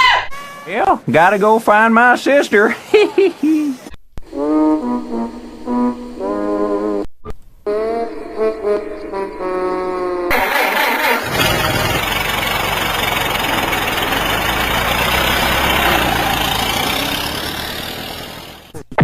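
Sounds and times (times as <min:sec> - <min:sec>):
engine rumbling: 0:09.0 - 0:18.8.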